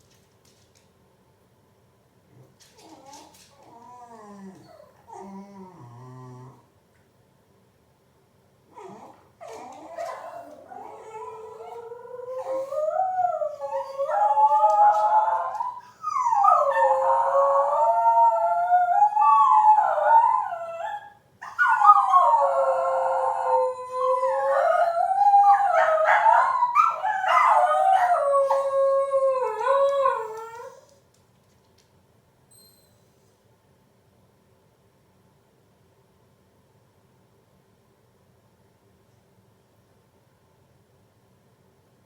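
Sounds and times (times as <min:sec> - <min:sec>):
dog howling: 0:08.8 - 0:30.9.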